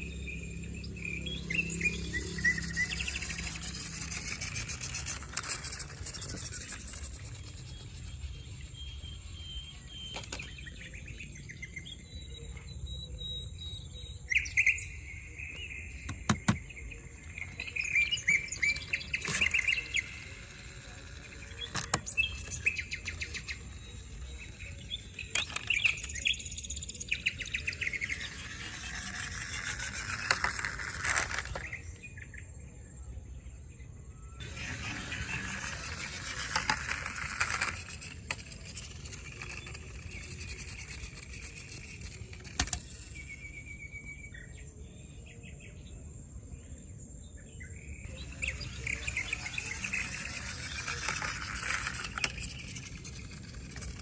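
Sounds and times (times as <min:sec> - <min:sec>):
birds chirping: 0:00.0 - 0:54.0
scraping noise: 0:27.8 - 0:31.8, 0:34.4 - 0:42.9.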